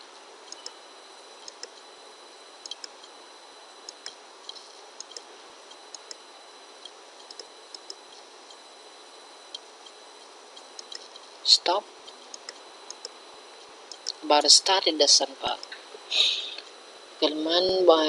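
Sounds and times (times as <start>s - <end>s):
steady low hiss: 0.0s - 18.0s
computer mouse clicks: 0.5s - 0.8s, 1.4s - 1.9s, 2.6s - 3.1s, 3.8s - 6.2s, 6.8s - 8.6s, 10.6s - 11.2s, 12.1s - 13.2s, 13.9s - 14.2s.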